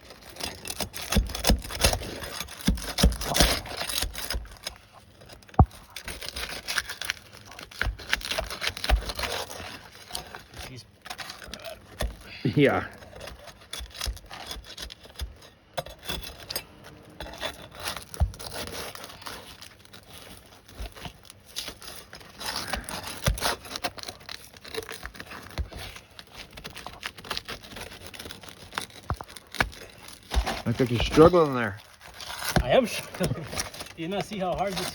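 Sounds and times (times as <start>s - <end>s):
shingles scraping and tearing: 0.0s - 34.9s.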